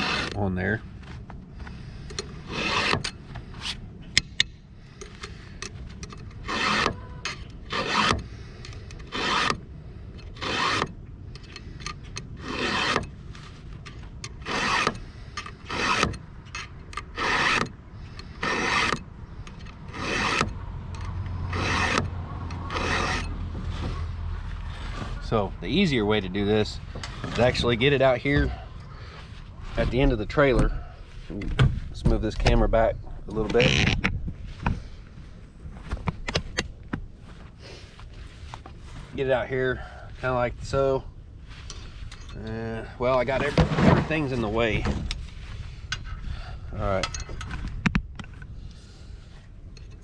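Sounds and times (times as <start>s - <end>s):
file rasping on chainsaw chain: 0.0s - 0.4s, 2.1s - 3.2s, 5.0s - 9.6s, 10.2s - 13.1s, 14.3s - 24.1s
low rumble: 19.1s - 48.5s.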